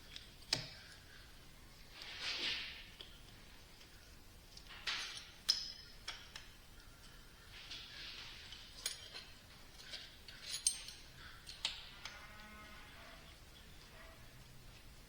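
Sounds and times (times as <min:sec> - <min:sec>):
metal parts clinking: 0:08.4 - 0:12.1.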